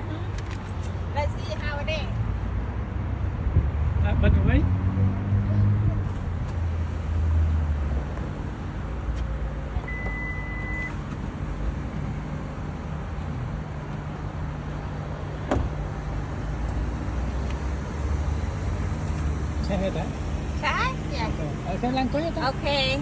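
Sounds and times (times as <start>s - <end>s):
car engine rumble: 0.0s - 23.0s
beep: 9.8s - 11.0s.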